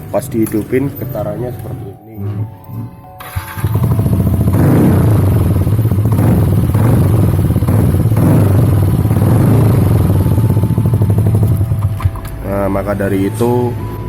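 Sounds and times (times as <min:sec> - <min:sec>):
scooter engine idling: 0:03.2 - 0:14.0.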